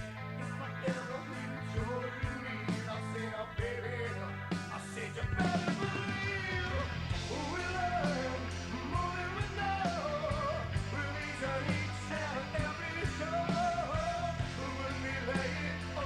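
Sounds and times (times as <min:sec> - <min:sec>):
rock music with male vocal: 0:00.0 - 0:16.0.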